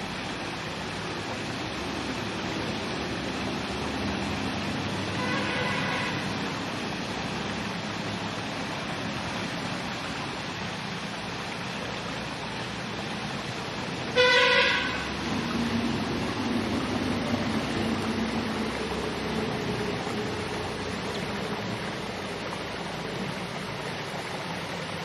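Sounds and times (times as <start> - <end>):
street traffic noise: 0.0 - 25.0
vehicle horn honking: 5.1 - 6.2, 14.1 - 15.1.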